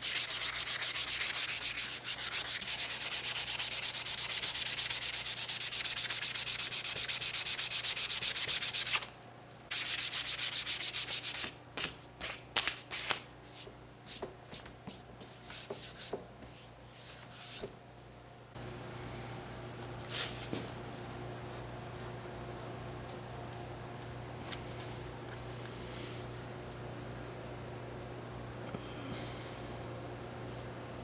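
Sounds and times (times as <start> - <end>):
hand sanding wood: 0.0 - 9.0.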